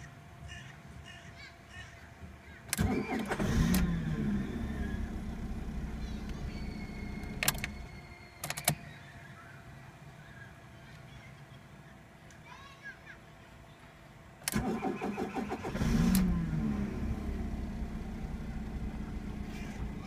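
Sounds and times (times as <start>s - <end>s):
starter motor cranking engine: 2.7s - 8.0s, 14.4s - 20.0s
car engine idling: 3.4s - 8.0s, 15.0s - 20.0s
sharp clicks: 7.2s - 8.8s.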